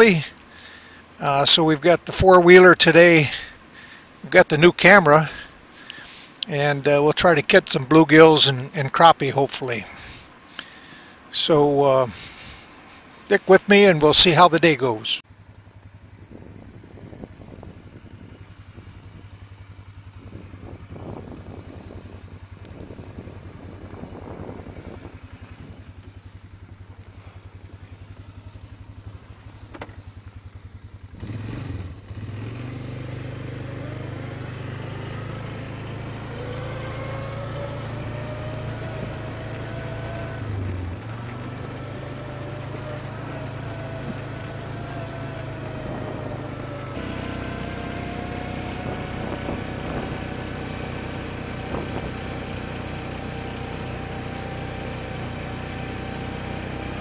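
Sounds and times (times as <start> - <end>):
small gasoline engine revving: 26.8 - 57.0.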